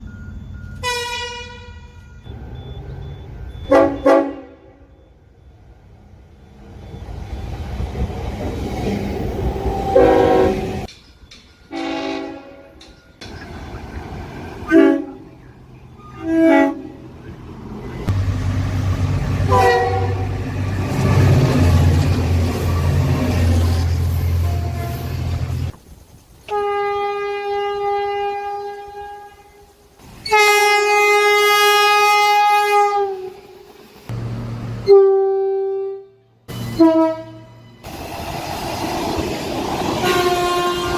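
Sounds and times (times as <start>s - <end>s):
low rumble of trains: 0.0s - 40.9s
locomotive air horn blasts: 0.8s - 2.0s, 3.6s - 4.9s, 9.7s - 10.9s, 11.7s - 12.8s, 14.6s - 15.3s, 16.0s - 17.0s, 19.4s - 20.4s, 24.3s - 25.6s, 26.5s - 33.4s, 34.8s - 37.6s, 40.0s - 40.9s.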